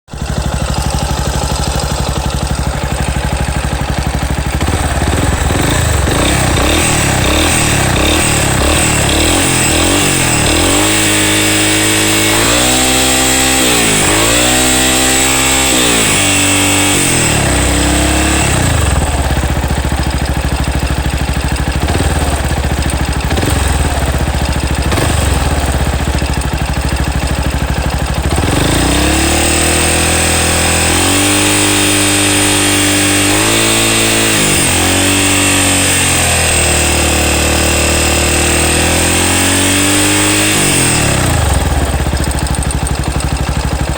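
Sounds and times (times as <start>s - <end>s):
motorcycle engine idling: 0.1s - 43.9s.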